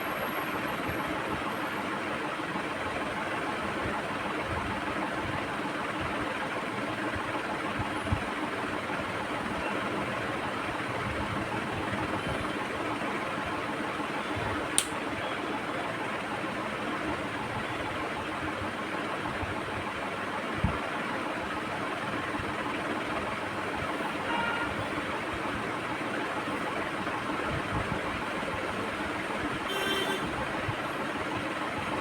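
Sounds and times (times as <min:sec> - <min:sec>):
mechanical whirring hum: 0:00.0 - 0:32.0
click: 0:14.8 - 0:15.0.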